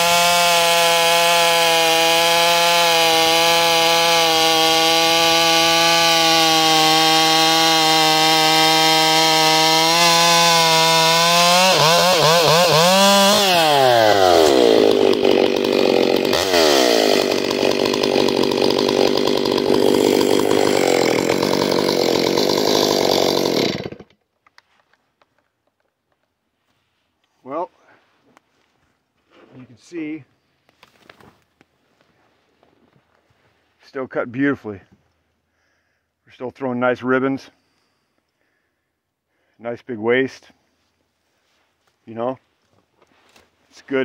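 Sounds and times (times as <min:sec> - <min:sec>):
chainsaw cutting wood: 0:00.0 - 0:24.3.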